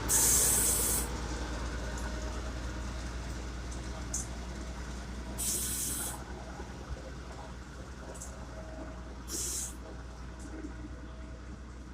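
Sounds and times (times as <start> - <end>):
machine engine humming: 0.0 - 10.0
short hissing bursts: 0.1 - 1.1, 5.4 - 6.2, 9.3 - 9.8.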